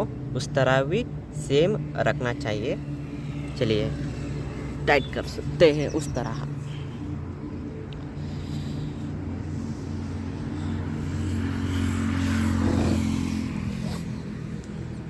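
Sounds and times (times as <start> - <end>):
vehicle engine passing by: 0.0 - 15.0.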